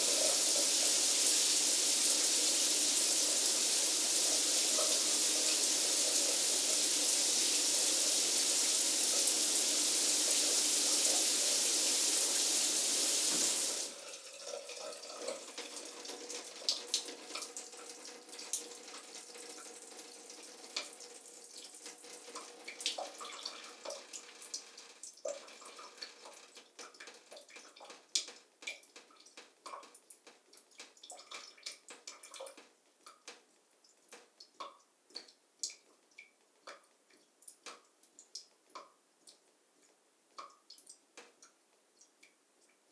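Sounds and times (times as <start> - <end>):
shower spray running: 0.0 - 13.9
water dripping and trickling: 0.0 - 42.8.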